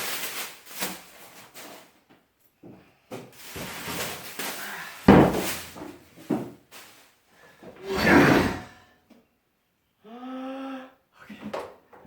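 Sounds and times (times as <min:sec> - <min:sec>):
packaging rustling and scraping: 0:00.0 - 0:02.1, 0:03.2 - 0:07.2.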